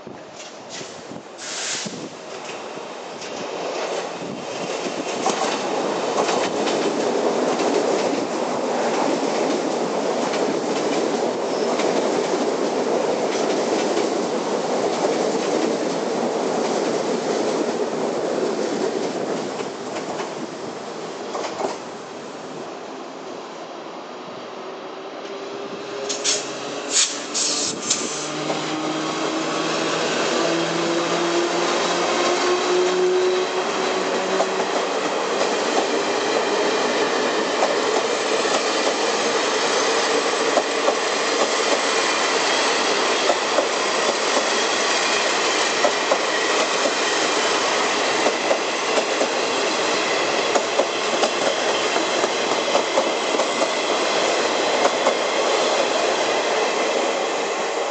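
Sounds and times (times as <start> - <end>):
train wheels clickety-clack on rails: 0.0 - 22.0, 25.2 - 57.9.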